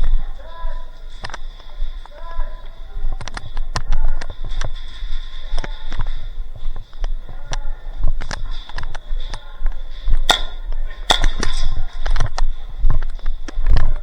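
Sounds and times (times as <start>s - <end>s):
airsoft gun shots: 10.3s - 11.6s.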